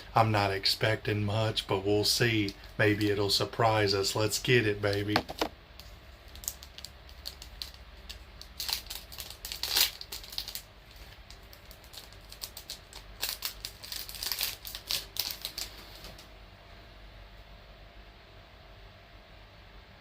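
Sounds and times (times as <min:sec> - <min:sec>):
foil wrapper tearing and crinkling: 0:06.2 - 0:16.2.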